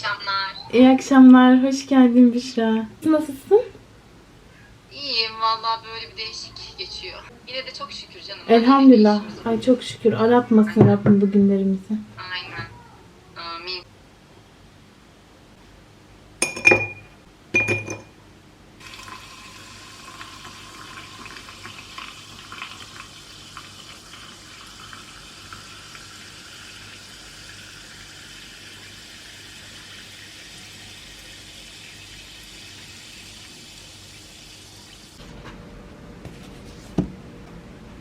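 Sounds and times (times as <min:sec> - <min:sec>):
glass clinks: 0:16.4 - 0:18.2
liquid pouring into a glass: 0:18.8 - 0:34.3.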